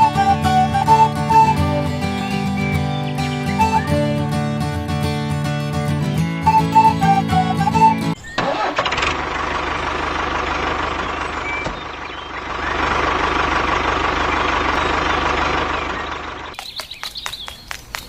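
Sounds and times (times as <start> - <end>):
small engine chugging: 0.0 - 4.0, 6.5 - 16.6.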